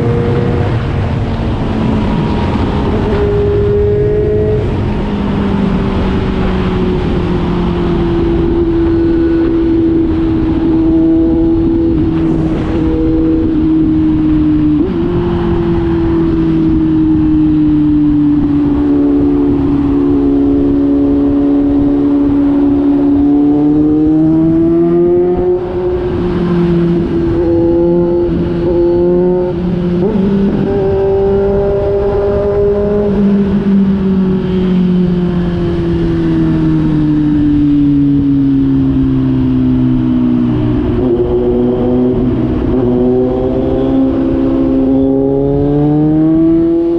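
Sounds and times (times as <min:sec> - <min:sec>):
motorcycle engine exhaust note: 0:00.0 - 0:46.9.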